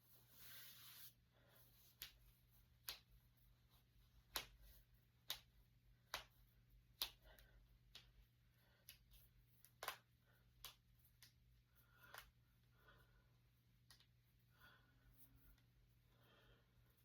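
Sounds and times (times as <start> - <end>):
knuckles cracking: 4.2 - 8.2, 8.8 - 12.4.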